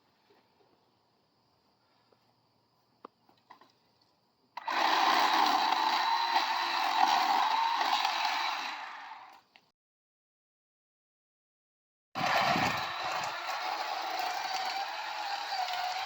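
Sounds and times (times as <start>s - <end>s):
chainsaw cutting bamboo: 4.6s - 9.5s, 12.2s - 16.0s.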